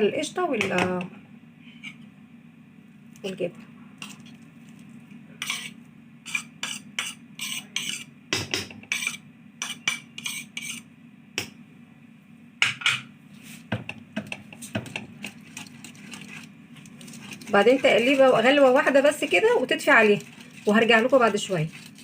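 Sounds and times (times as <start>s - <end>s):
steady low hum: 0.0s - 22.0s
spoon clinking and scraping pot: 5.4s - 8.1s, 14.3s - 22.0s
spoon stirring sauce in a pot: 14.2s - 22.0s.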